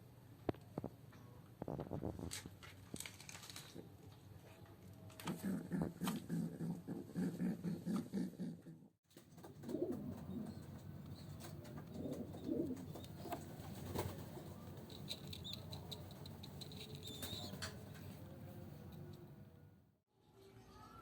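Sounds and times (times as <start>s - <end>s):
wing flutters: 9.1s - 18.2s
pigeons cooing: 9.5s - 18.3s.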